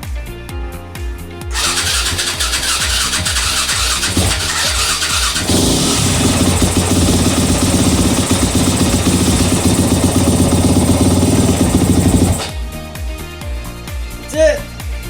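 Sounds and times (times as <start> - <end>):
motorcycle engine starting and running: 1.5 - 12.7.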